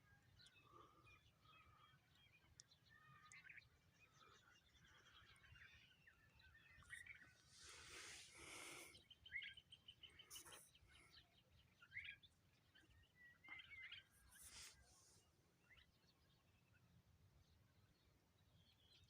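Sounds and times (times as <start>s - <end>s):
birds chirping and whistling: 3.0s - 15.8s.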